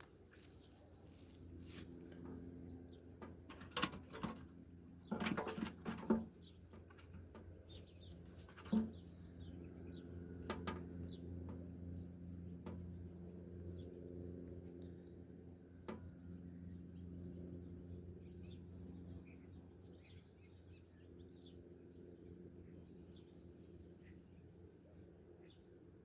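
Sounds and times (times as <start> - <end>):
small birds chirping: 0.0 - 25.7
sharp clicks and knocks: 3.2 - 9.1, 10.4 - 11.6.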